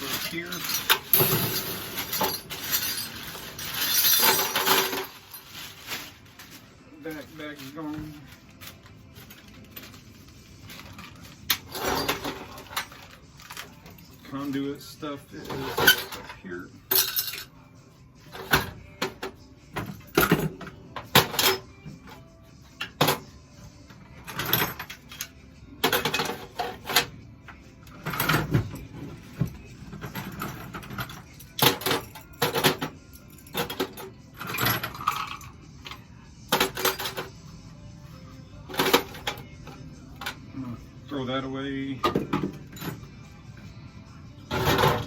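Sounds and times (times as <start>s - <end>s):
metal fittings clinking and rattling: 0.0s - 5.8s.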